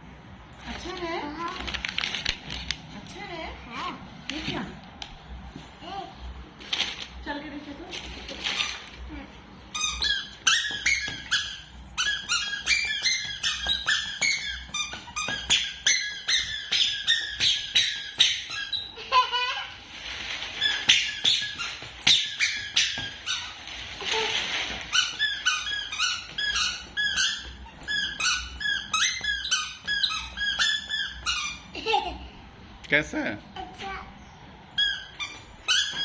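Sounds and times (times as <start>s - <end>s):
squeaky shoes squeaking: 8.4s - 8.9s, 9.6s - 19.2s, 20.3s - 31.8s, 34.7s - 36.0s.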